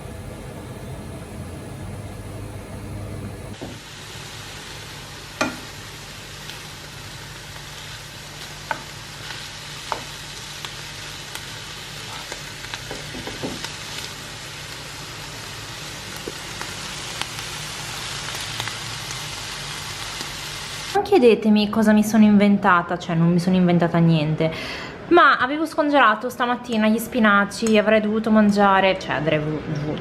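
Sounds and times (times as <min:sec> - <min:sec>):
steady low hum: 0:00.0 - 0:03.6
food sizzling in a frying pan: 0:03.5 - 0:21.0.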